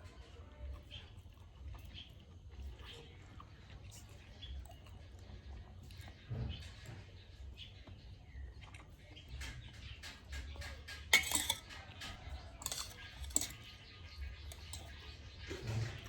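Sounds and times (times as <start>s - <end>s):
spoon clinking on a plate: 10.6s - 15.0s.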